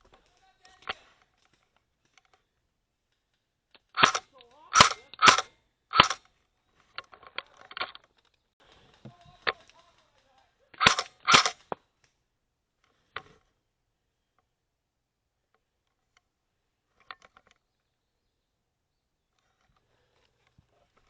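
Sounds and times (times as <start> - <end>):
faint cracks and clicks: 0.0 - 12.2, 16.9 - 18.0, 19.3 - 21.0
airsoft guns firing: 3.9 - 6.2, 8.9 - 11.7.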